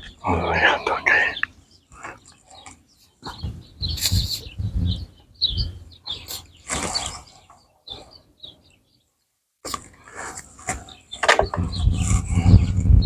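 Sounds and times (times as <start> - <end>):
wooden chair parts knocking: 11.2 - 12.0.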